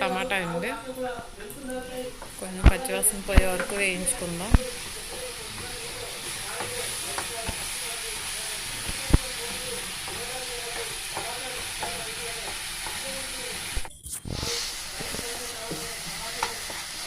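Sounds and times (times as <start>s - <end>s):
masala sizzling in hot oil: 0.0s - 17.0s
spoon clicking against pan: 10.1s - 13.2s.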